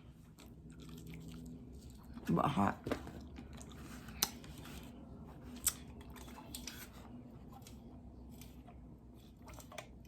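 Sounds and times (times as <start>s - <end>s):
chewing crispy chicken wings: 0.3s - 2.4s.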